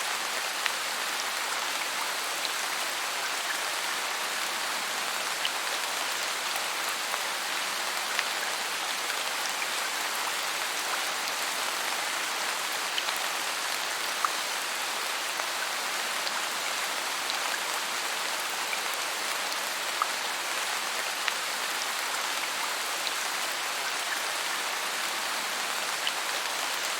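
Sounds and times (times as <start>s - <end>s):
rain on foliage: 0.0s - 26.9s.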